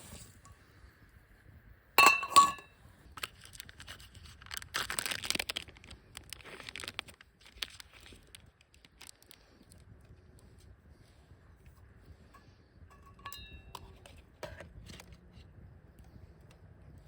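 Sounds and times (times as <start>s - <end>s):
rustling crinkling handling noise: 3.1s - 11.2s.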